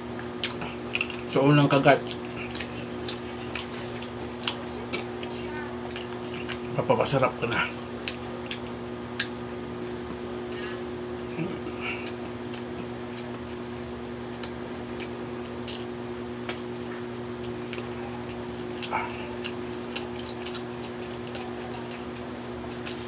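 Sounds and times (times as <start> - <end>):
person chewing: 0.0 - 23.0
steady hum and hiss: 0.0 - 23.0
mouth clicks and smacks: 0.3 - 1.4, 7.4 - 10.6, 14.2 - 16.8, 17.4 - 23.0.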